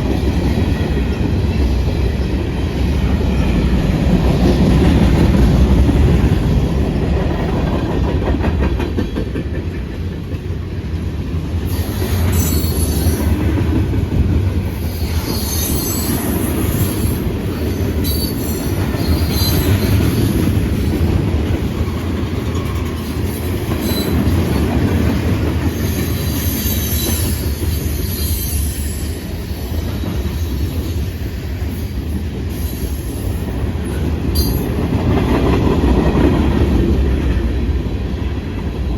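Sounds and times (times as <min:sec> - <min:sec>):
freight train cars rumbling past: 0:00.0 - 0:38.9
high-pitched wheel squeal: 0:14.9 - 0:17.0.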